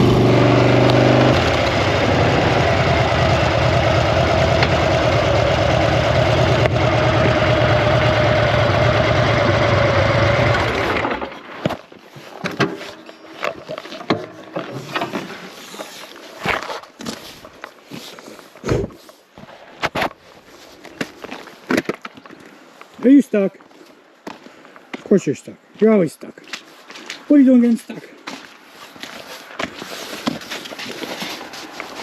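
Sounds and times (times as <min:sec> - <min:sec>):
motorcycle engine revving high: 0:00.0 - 0:11.3.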